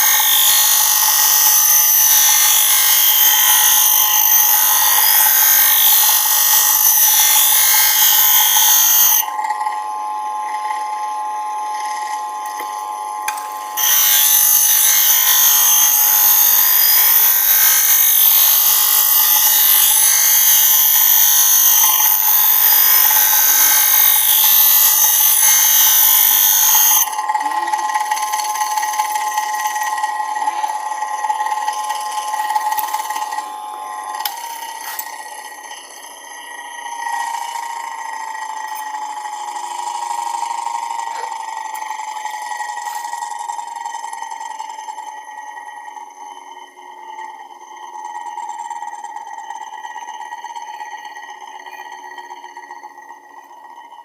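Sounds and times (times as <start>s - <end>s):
sharpening machine motor whine: 0.0s - 54.0s
blade grinding hiss: 13.7s - 27.1s.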